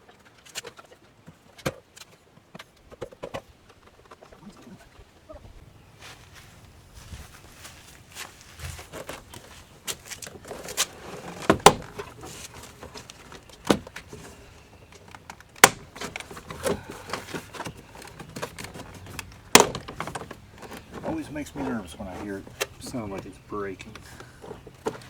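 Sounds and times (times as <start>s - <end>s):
plastic parts cracking and snapping: 9.0s - 21.2s.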